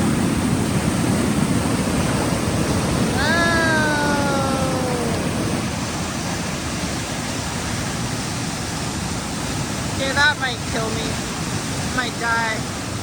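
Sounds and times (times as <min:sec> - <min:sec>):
waterfall and stream rushing: 0:00.0 - 0:13.0
drawn-out descending call: 0:03.1 - 0:05.3.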